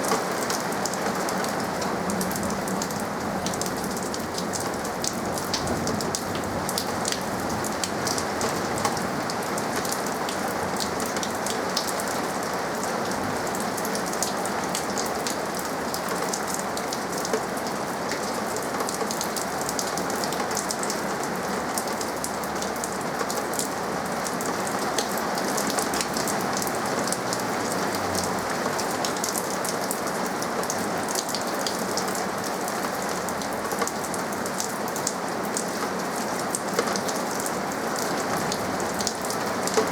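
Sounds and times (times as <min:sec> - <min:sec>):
steady rain with drops pattering: 0:00.0 - 0:39.9.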